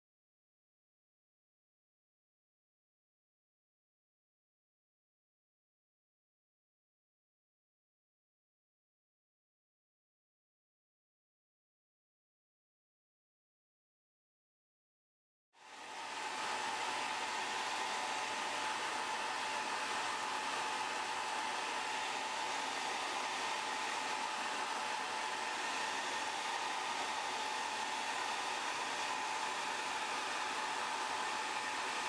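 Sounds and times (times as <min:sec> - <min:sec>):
hot-air gun blowing: 0:15.6 - 0:32.0.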